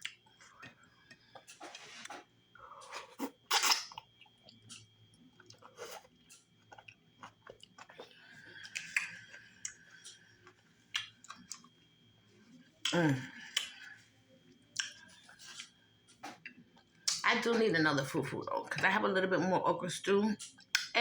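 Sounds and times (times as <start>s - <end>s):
person chewing food: 0.0s - 11.8s, 12.8s - 17.2s.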